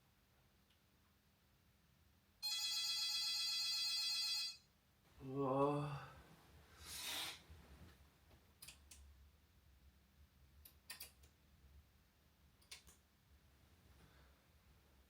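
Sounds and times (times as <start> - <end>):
faint sharp clicks: 10.6 - 11.4, 12.6 - 13.0.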